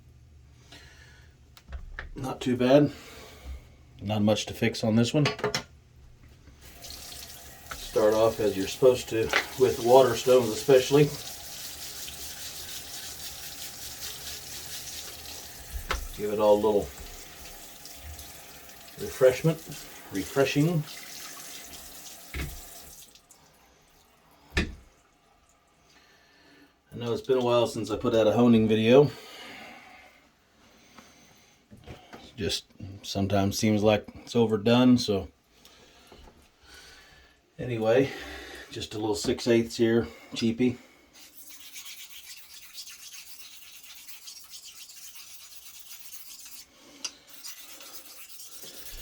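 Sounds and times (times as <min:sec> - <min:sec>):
razor scraping on wet stone: 0:41.2 - 0:49.0.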